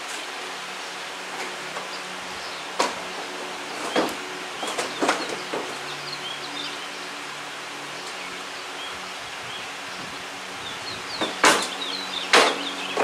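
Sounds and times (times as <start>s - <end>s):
sharp knocks of parts: 2.8s - 5.8s, 11.2s - 11.7s, 12.3s - 13.0s.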